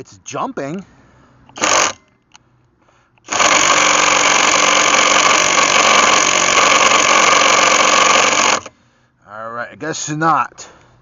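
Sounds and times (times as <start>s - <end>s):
impact wrench hammering: 1.6s - 2.0s, 3.3s - 8.7s.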